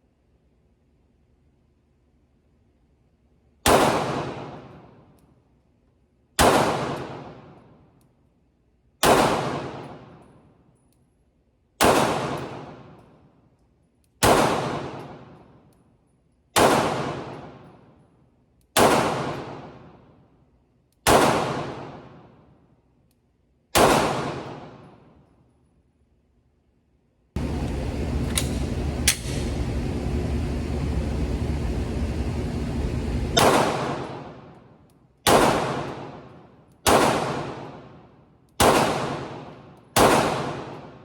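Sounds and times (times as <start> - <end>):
pistol shots: 3.6 - 5.0, 6.4 - 7.7, 9.0 - 10.3, 11.8 - 13.2, 14.2 - 15.5, 16.6 - 17.8, 18.7 - 20.0, 21.0 - 22.4, 23.7 - 25.1, 33.4 - 41.0.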